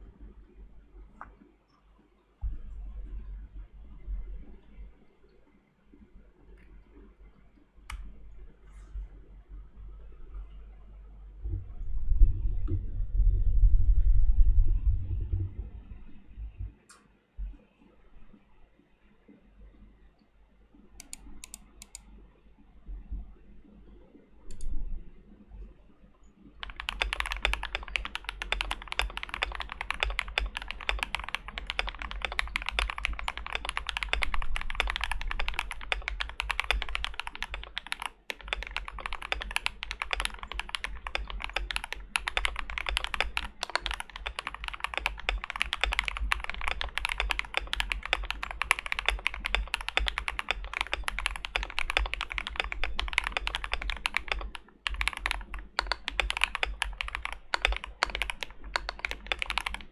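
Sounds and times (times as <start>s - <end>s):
fast mechanical keyboard typing: 21.0s - 22.0s, 26.6s - 59.9s.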